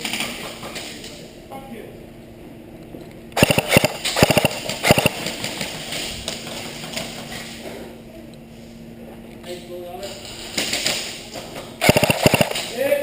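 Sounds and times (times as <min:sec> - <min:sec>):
airsoft gunfire bursts: 0:03.4 - 0:05.6, 0:11.8 - 0:12.7.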